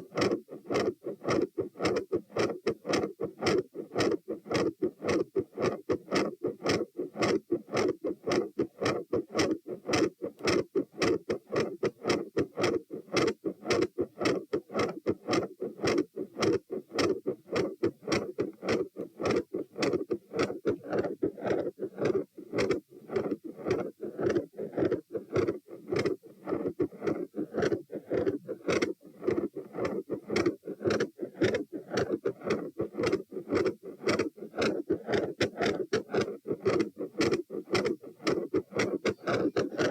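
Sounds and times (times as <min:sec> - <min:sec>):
heart murmur: 0:37.7 - 0:39.9.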